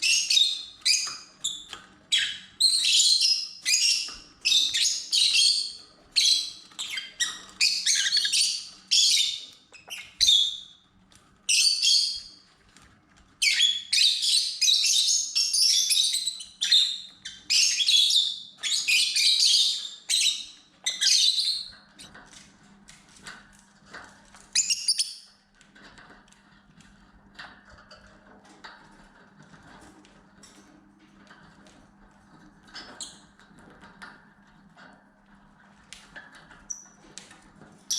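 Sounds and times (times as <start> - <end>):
lovebirds chirping and squawking: 0.0 - 10.8, 11.5 - 12.3, 13.4 - 22.1, 24.5 - 25.3.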